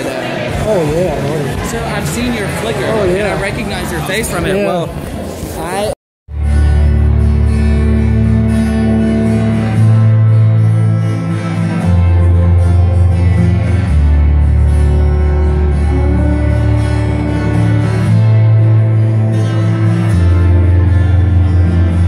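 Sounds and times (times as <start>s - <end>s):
guitar: 0.0s - 22.0s
sustained bass notes: 6.3s - 22.0s.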